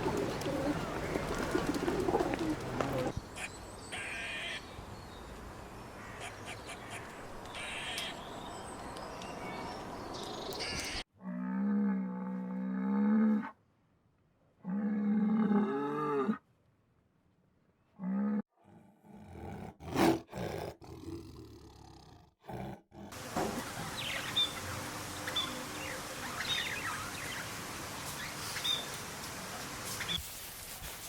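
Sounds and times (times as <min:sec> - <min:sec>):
rough noisy animal calls: 0:00.0 - 0:04.6.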